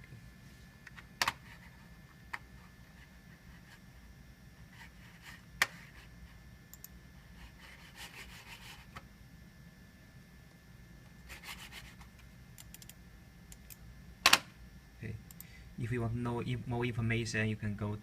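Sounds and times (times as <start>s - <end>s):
faint steady hum: 0.0s - 18.0s.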